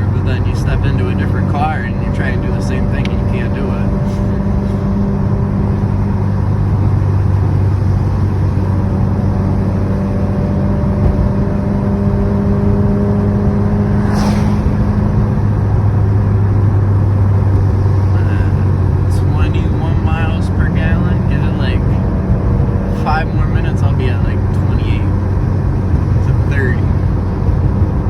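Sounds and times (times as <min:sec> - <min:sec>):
car engine drone: 0:00.0 - 0:28.0
road noise: 0:00.0 - 0:28.0
brief hiss: 0:14.0 - 0:14.9.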